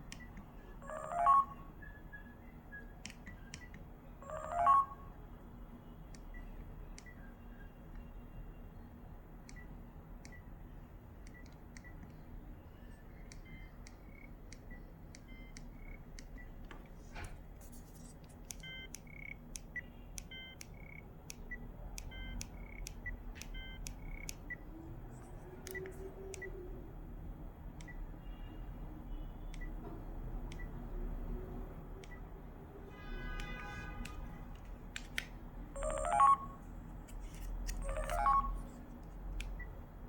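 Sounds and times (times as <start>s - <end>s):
mobile phone beeps: 0.2s - 1.9s, 4.2s - 5.1s, 18.6s - 24.6s, 35.8s - 36.7s, 37.7s - 38.7s.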